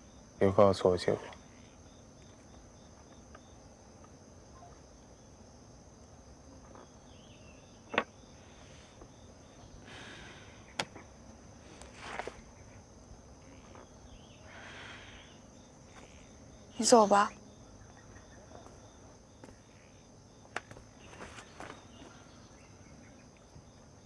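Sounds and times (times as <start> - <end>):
crickets chirring: 0.0 - 24.0
soft rustles: 11.6 - 12.6, 20.7 - 22.2.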